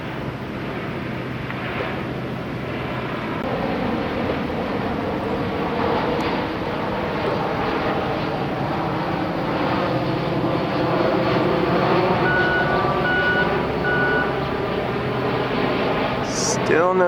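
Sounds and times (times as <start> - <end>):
aircraft rumble overhead: 0.0 - 17.0
reversing alarm beeping: 12.1 - 14.4.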